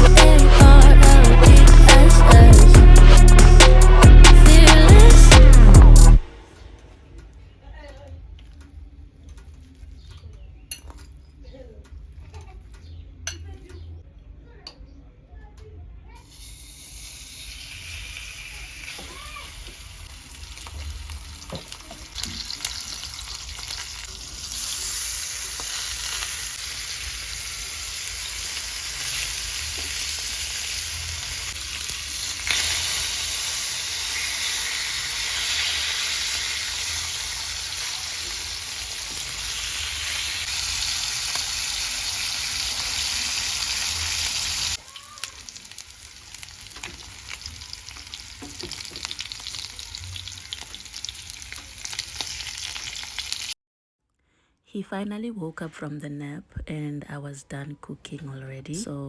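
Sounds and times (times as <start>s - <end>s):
food sizzling in a pan: 16.2s - 53.6s.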